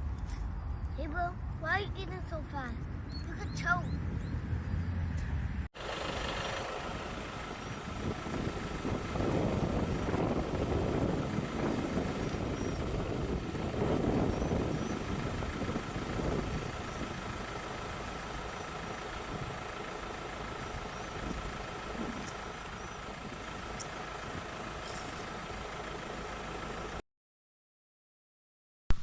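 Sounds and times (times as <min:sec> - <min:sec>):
engine-like rumble with hiss: 0:05.7 - 0:27.0.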